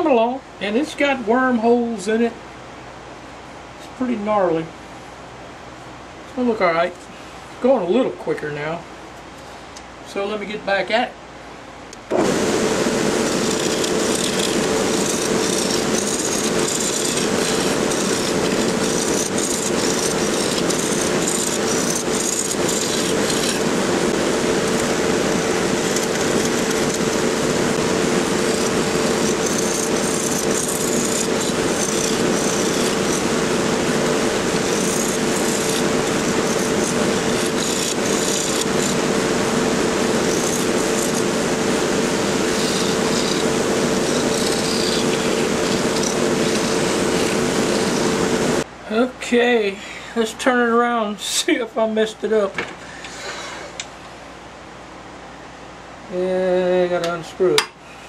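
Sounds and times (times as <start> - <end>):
scratchy hiss of wood cutting: 12.1 - 48.6
lathe motor running: 12.1 - 48.7.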